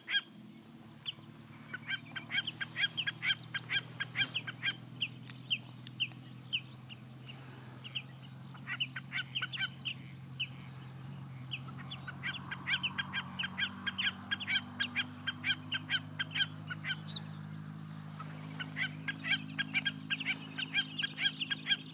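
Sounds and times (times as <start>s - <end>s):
bird calling rapid sharp notes: 11.4s - 17.3s, 18.2s - 21.9s.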